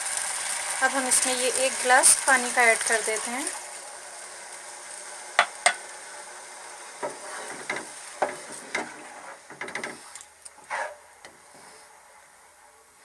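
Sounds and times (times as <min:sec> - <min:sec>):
faint steady hiss: 0:00.0 - 0:13.0
utensil clinking on pot: 0:05.4 - 0:05.8.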